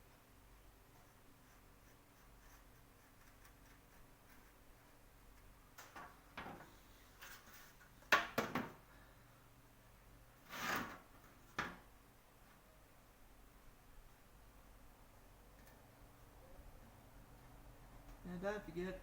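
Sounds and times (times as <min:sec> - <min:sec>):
objects knocking and clattering: 0:05.8 - 0:06.7, 0:08.1 - 0:08.8.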